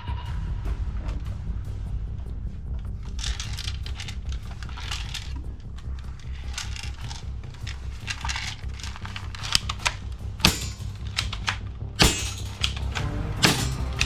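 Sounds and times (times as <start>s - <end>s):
background music with bass: 0.0s - 14.0s
toy guns clicking: 3.2s - 14.0s
toy gun shots: 8.1s - 14.0s.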